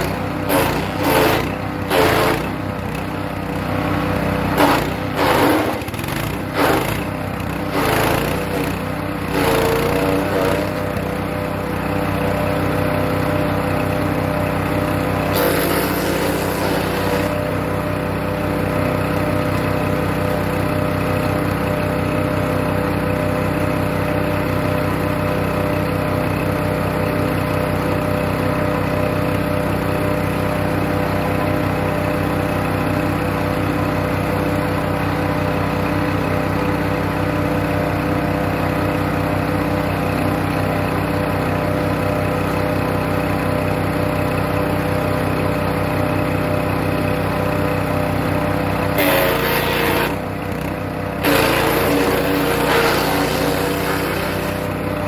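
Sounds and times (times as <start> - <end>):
wood chipper engine running: 0.0 - 55.0
wood chipping noise: 51.2 - 54.6.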